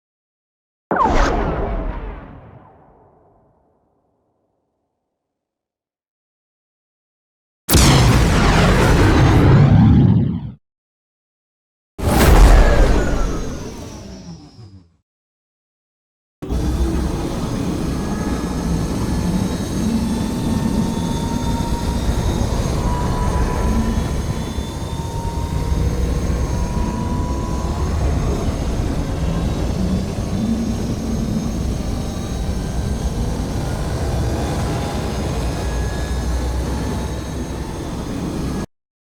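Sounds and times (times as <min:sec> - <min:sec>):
deep engine noise with whine: 0:12.1 - 0:15.0, 0:16.4 - 0:38.7.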